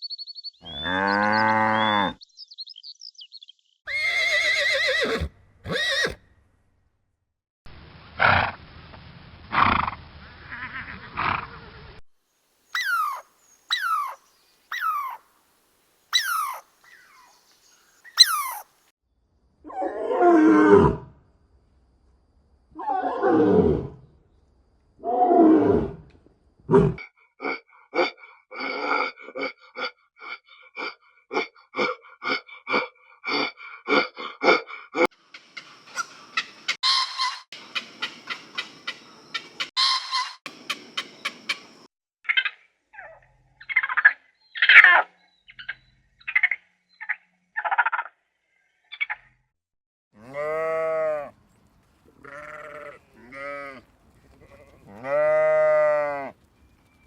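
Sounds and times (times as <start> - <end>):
farm animal calls: 0.6 - 2.2, 12.8 - 15.2, 16.1 - 17.4, 18.0 - 18.7, 33.9 - 48.1, 52.1 - 56.5
bleat: 10.5 - 11.1, 50.2 - 51.4, 52.2 - 56.4.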